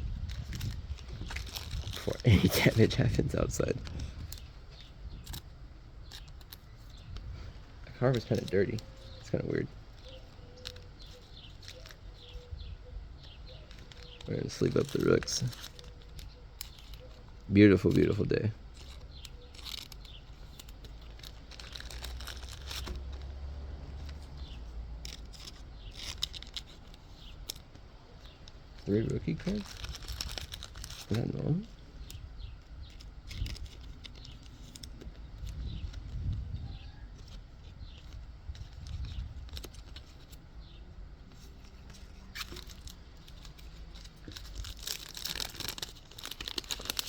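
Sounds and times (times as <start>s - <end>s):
wind rumble on microphone: 0.0s - 5.4s, 12.2s - 13.4s, 35.0s - 40.0s
plastic packaging crinkling: 0.0s - 12.5s, 13.2s - 47.0s
plastic rustling: 0.0s - 12.5s, 13.1s - 47.0s
low steady rumble: 0.0s - 47.0s
birds chirping: 1.0s - 47.0s.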